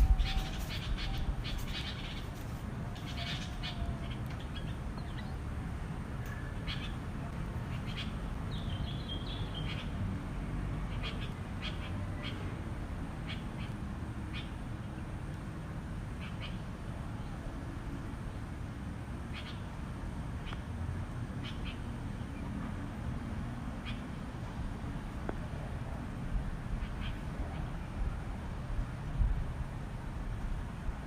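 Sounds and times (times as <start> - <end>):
small birds chirping: 0.0 - 5.5, 6.2 - 10.0, 10.9 - 12.5, 21.4 - 22.5.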